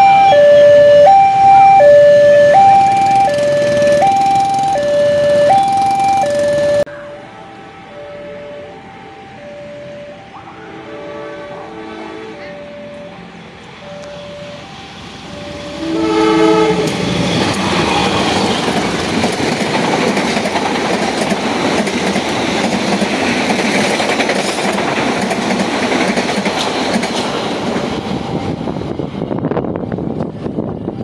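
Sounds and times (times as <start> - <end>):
train rumbling past: 0.0 - 31.0
train horn blast: 4.8 - 14.6, 15.3 - 17.2.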